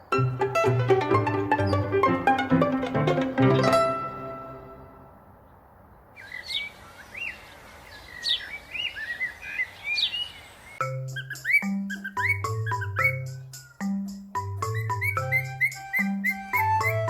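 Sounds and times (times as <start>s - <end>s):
background music: 0.0s - 5.2s, 10.8s - 17.0s
parrots chirping and whistling: 10.8s - 13.8s, 14.4s - 17.0s.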